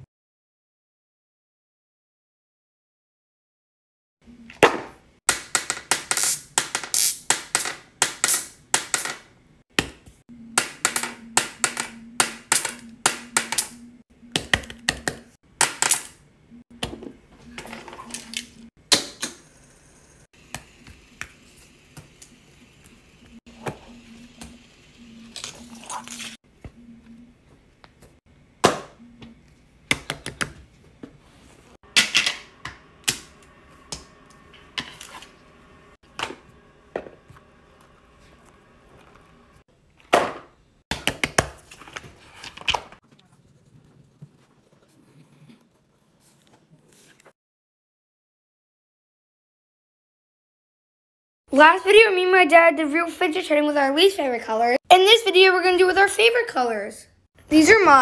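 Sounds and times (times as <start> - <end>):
faint hum: 19.4 - 29.8.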